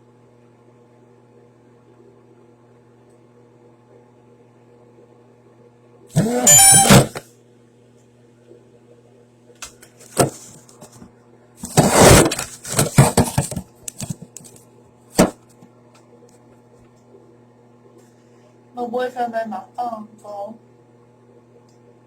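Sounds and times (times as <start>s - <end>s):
phone falling and clattering: 6.2s - 7.2s, 11.6s - 14.2s, 15.2s - 15.4s.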